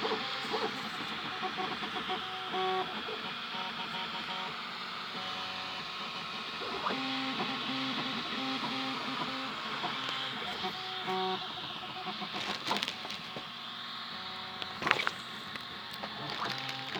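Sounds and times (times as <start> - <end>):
stepper motors whining: 0.0 - 16.9.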